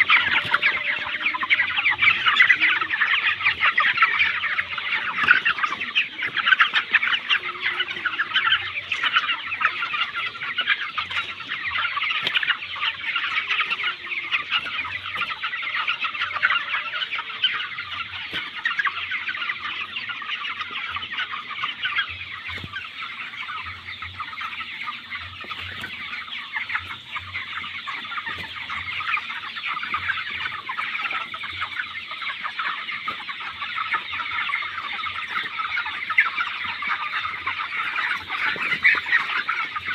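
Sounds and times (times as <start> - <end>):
chickens cheeping and clucking: 0.0 - 39.9.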